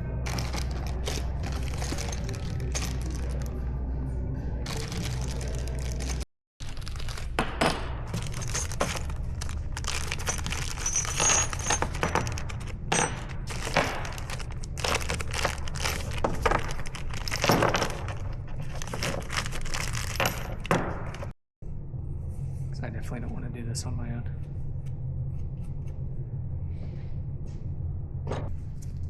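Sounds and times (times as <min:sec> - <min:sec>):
low hum: 0:00.0 - 0:20.5, 0:21.6 - 0:29.0
metal bike parts clinking: 0:06.8 - 0:20.9.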